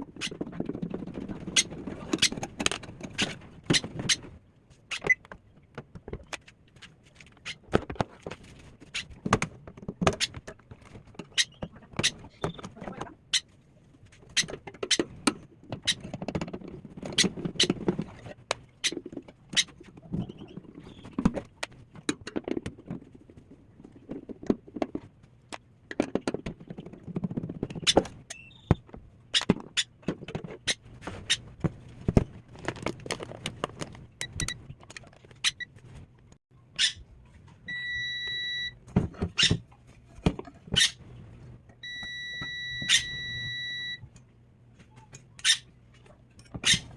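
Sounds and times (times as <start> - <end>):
electronic beeps: 37.7 - 38.8, 41.8 - 44.0.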